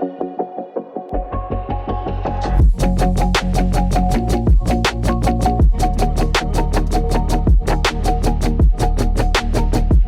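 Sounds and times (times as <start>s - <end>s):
upbeat music with drum beat: 2.5s - 10.0s.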